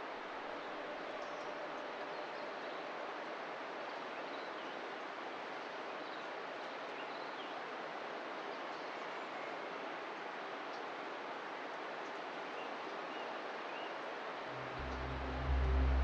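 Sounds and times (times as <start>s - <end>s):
steady rushing noise: 14.5s - 16.0s.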